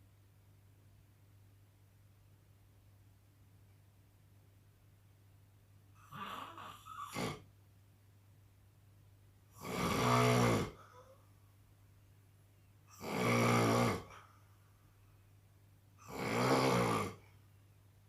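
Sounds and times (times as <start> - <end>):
man snoring: 6.1 - 7.4, 9.6 - 11.0, 12.9 - 14.2, 16.0 - 17.3.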